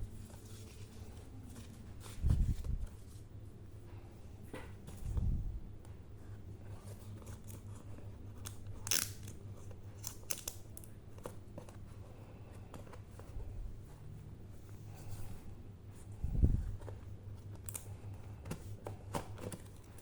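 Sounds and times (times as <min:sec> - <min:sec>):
low steady hum: 0:00.0 - 0:20.0
packaging clicks and snips: 0:08.4 - 0:11.7.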